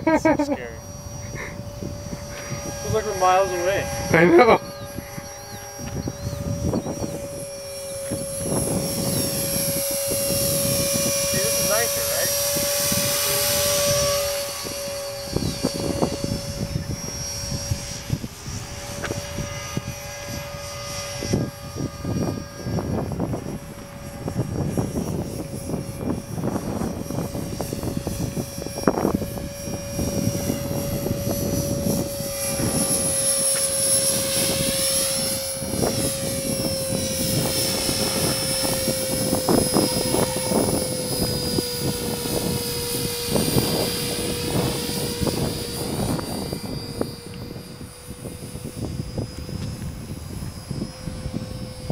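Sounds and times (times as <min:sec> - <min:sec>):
rc helicopter rotor whine: 0:00.0 - 0:51.9
wind buffeting microphone: 0:00.0 - 0:51.9.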